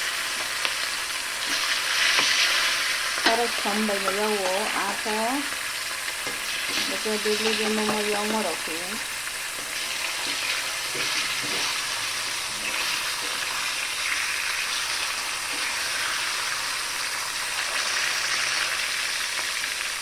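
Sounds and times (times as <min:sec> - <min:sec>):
food sizzling in hot oil: 0:00.0 - 0:20.0.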